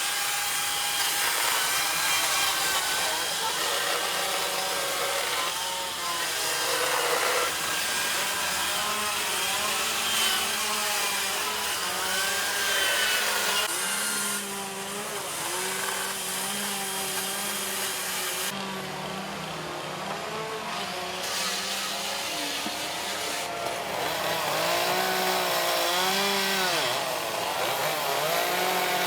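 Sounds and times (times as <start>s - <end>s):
chainsaws cutting wood: 0.0s - 19.2s, 20.1s - 29.0s.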